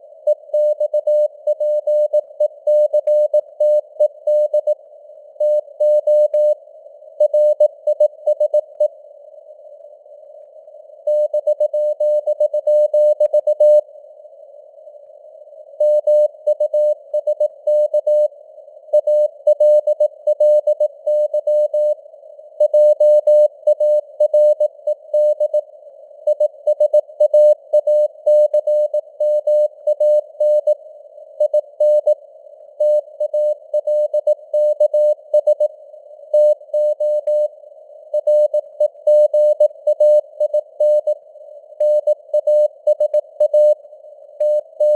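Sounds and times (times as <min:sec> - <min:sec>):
morse code beeps: 0:44.4 - 0:44.9.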